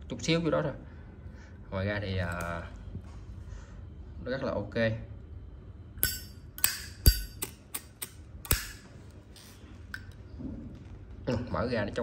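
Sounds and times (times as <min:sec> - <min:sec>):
lighter lid metallic clicks: 0:06.0 - 0:08.8.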